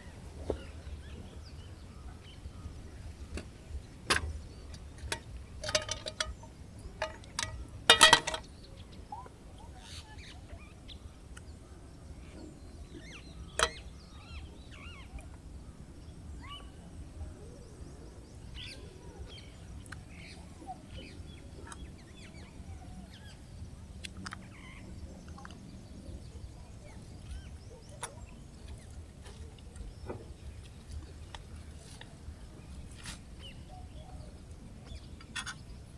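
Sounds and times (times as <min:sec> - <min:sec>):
birds chirping: 0:00.0 - 0:35.9
low outdoor rumble: 0:00.0 - 0:35.9
camp gear knocking and rattling: 0:03.1 - 0:08.6.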